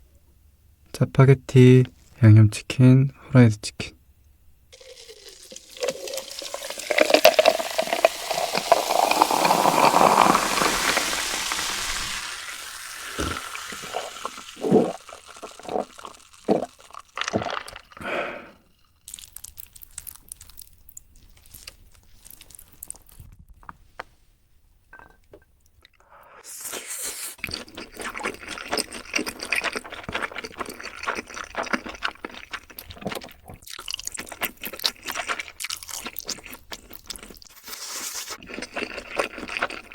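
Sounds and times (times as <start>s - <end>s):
liquid poured into a glass: 4.8s - 18.1s
dense crackling: 5.3s - 18.0s.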